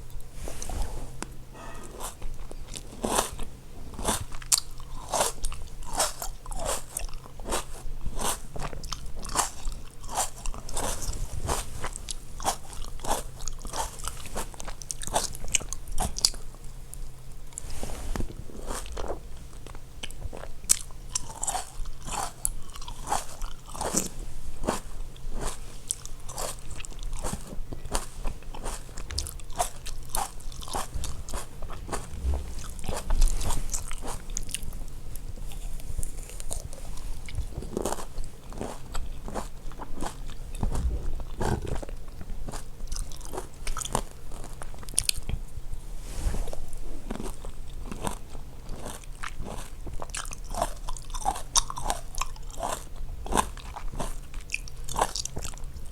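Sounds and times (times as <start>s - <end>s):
person drinking water: 28.6s - 34.6s, 40.1s - 42.0s.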